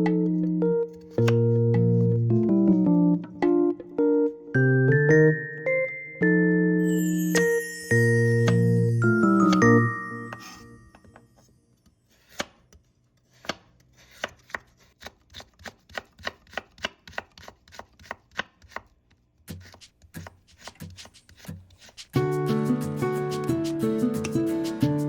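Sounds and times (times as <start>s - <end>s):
background music: 0.0s - 11.0s, 22.2s - 25.0s
knife chopping on cutting board: 12.2s - 12.7s, 13.3s - 18.9s, 19.5s - 22.1s.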